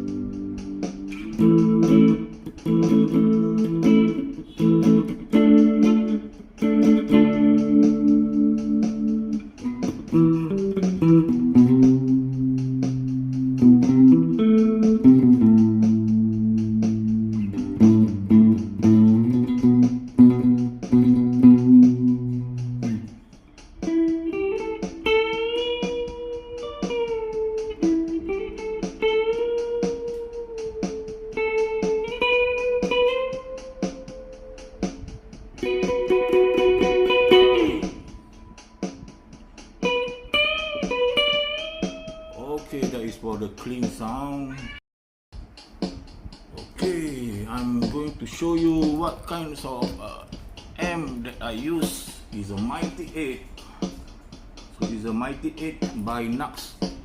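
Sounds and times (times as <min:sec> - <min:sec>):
clean electric guitar playing: 0:00.0 - 0:44.8.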